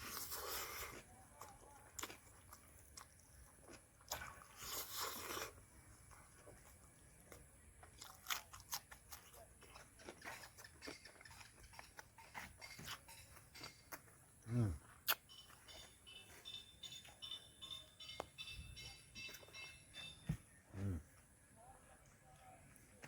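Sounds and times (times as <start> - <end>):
person chewing and crunching food: 0.0 - 17.1
mouth clicks: 14.4 - 15.6.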